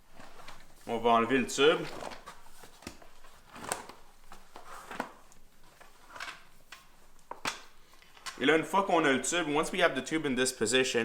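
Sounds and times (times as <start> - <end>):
rubber rubbing and rustling: 0.0 - 7.8.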